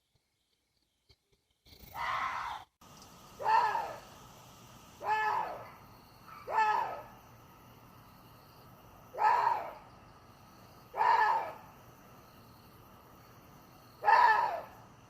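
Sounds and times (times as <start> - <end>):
deer barking calls: 3.4 - 4.1, 5.0 - 7.1, 9.1 - 9.8, 10.9 - 11.7, 14.0 - 14.7.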